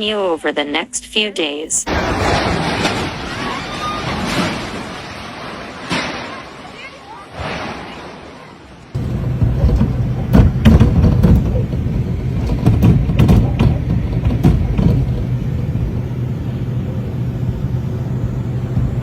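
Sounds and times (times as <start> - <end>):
wind buffeting microphone: 8.9 - 19.0
sharp knocks and hits: 9.0 - 15.4
steady hum: 9.0 - 19.0.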